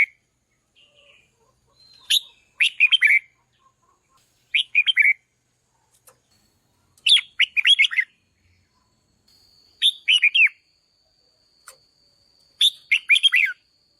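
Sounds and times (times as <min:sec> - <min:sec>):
bird warbling: 0:12.6 - 0:13.6.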